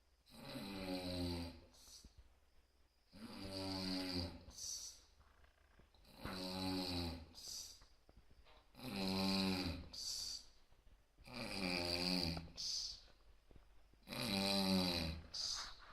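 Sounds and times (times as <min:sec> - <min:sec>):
person snoring: 0:00.3 - 0:02.1, 0:03.1 - 0:05.0, 0:06.0 - 0:07.8, 0:08.8 - 0:10.5, 0:11.2 - 0:13.1, 0:14.0 - 0:15.9.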